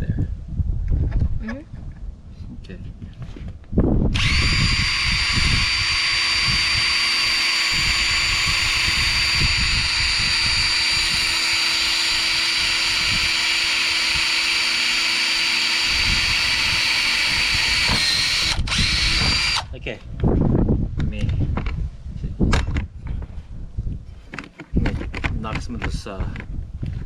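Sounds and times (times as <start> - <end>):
electric drill whining through metal: 4.1 - 19.7.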